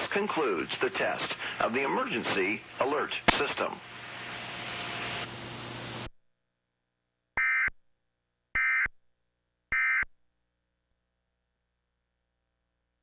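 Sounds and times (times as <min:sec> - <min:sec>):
steady hiss: 0:00.0 - 0:06.1.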